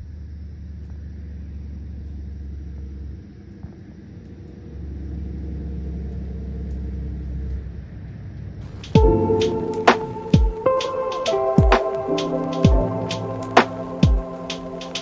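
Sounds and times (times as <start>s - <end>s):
car engine and road noise: 0.0s - 10.3s.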